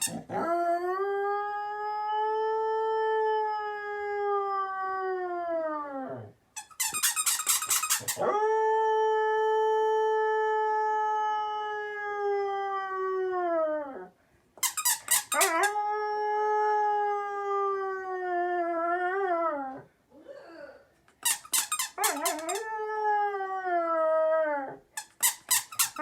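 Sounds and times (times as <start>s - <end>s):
squeaky toy being chewed: 0.0s - 0.3s, 6.6s - 8.2s, 14.6s - 15.8s, 21.1s - 22.6s, 25.0s - 26.0s
dog howling: 22.0s - 24.8s.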